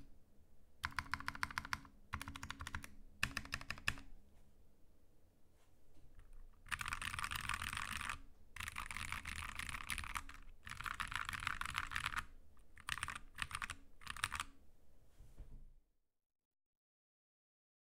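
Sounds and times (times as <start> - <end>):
fast typing on mechanical keyboard: 0.8 - 4.0, 6.6 - 14.5.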